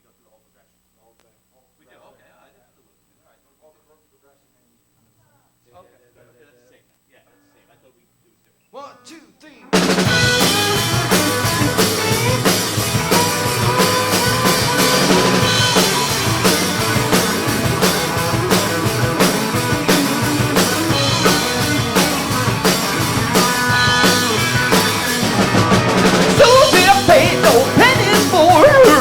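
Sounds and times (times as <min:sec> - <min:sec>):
drum kit steady beat: 0:09.7 - 0:29.0
live rock band playing: 0:09.8 - 0:29.0.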